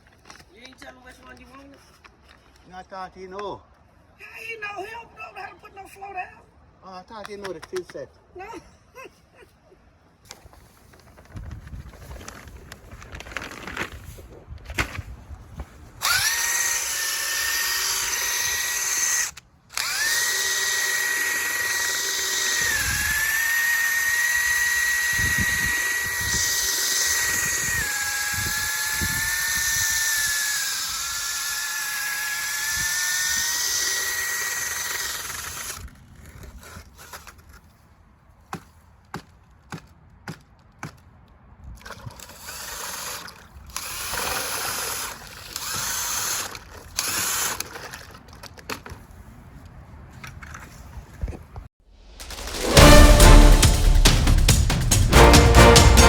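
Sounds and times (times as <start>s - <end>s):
electric drill motor whining: 16.0s - 35.8s.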